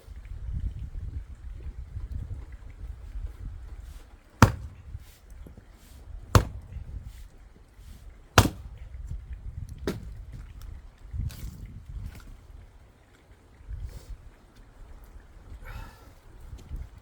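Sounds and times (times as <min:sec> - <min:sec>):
axe splitting wood: 0:04.4 - 0:05.4, 0:06.2 - 0:07.3, 0:08.4 - 0:09.2, 0:09.8 - 0:10.4.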